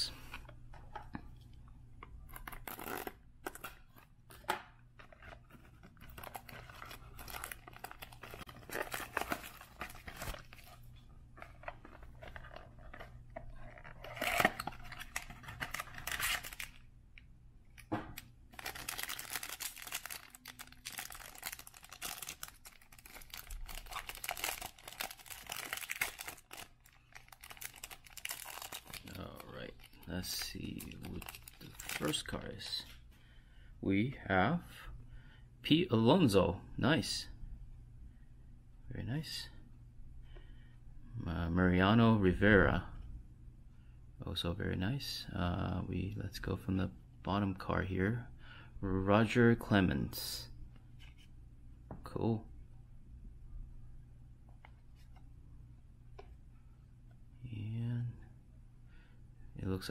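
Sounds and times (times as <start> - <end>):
card pack wrapper ripping: 2.4 - 3.8, 6.0 - 10.7, 13.6 - 16.8, 18.5 - 32.3
wrapper crinkling: 5.0 - 10.9, 11.5 - 16.8, 18.5 - 32.4.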